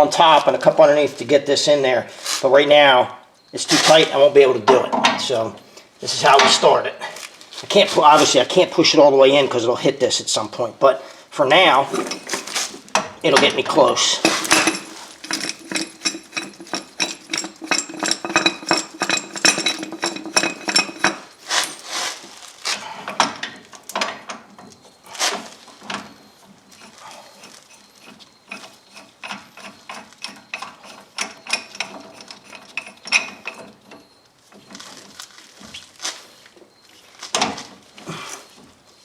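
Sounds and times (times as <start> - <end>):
metal clinks: 11.9 - 22.0.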